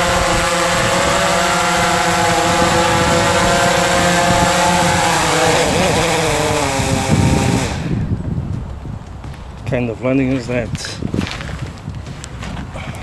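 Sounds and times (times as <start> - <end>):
drone propellers buzzing: 0.0 - 9.6.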